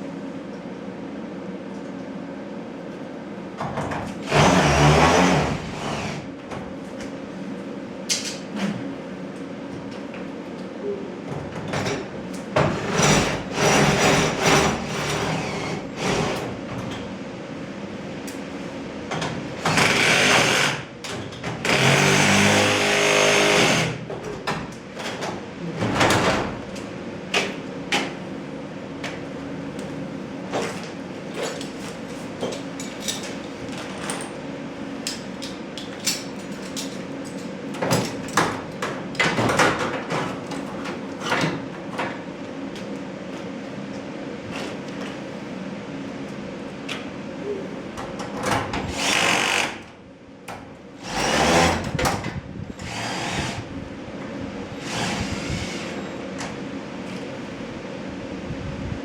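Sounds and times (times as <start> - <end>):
steady low hum: 49.9 - 59.0
power driver running: 52.8 - 56.5.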